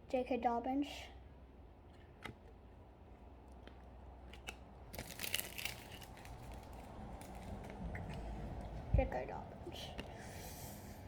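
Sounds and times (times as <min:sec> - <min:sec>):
cards rustling: 0:04.4 - 0:08.3.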